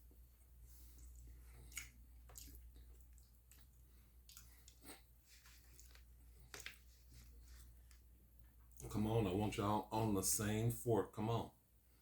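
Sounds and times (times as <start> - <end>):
low steady hum: 0.0 - 12.0
wet chewing mouth smacks: 0.9 - 6.8.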